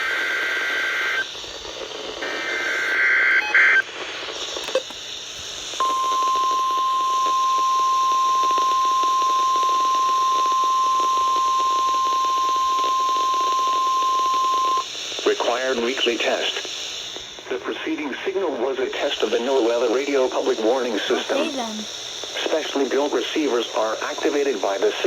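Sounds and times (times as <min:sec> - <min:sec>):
radio hiss: 0:00.4 - 0:05.8, 0:14.8 - 0:25.0
steady single-pitch alarm tone: 0:05.8 - 0:14.8.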